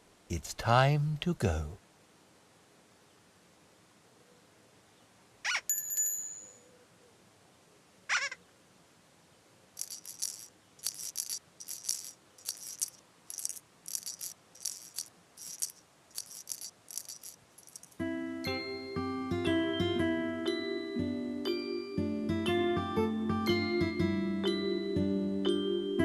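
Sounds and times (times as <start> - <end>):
short high rattling shakes: 9.8 - 18.0.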